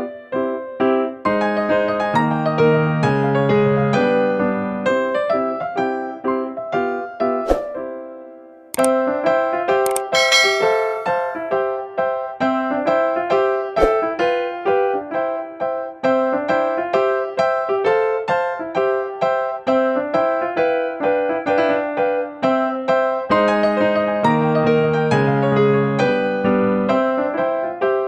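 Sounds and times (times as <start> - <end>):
piano-like keyboard melody: 0.0 - 28.0
sharp click: 9.9 - 11.3.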